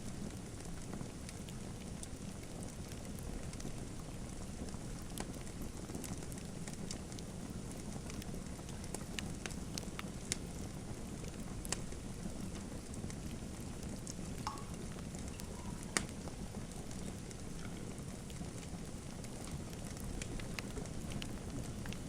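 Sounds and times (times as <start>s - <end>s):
wood fire crackling: 0.0s - 22.0s
sharp pops of burning wood: 14.0s - 18.4s
faint whistle from burning wood: 14.6s - 16.4s.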